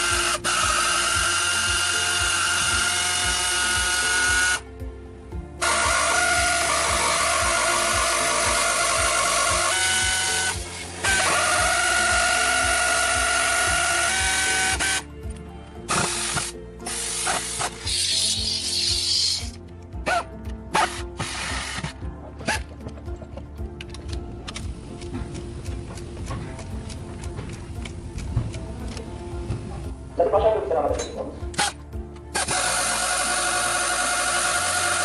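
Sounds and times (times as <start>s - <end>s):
power tool whining: 0.0s - 4.7s, 5.6s - 15.1s, 15.8s - 22.6s, 31.6s - 35.0s
background music: 0.0s - 35.0s.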